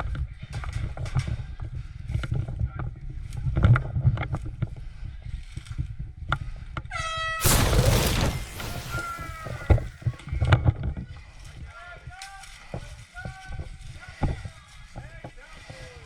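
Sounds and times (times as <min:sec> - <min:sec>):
burst of rushing noise: 0:07.4 - 0:10.0.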